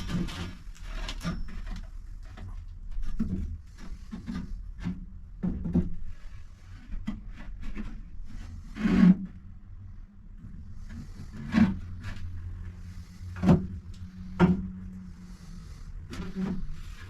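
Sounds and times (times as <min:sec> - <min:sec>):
wooden boards knocking and scraping: 0:00.0 - 0:06.3, 0:13.0 - 0:15.4.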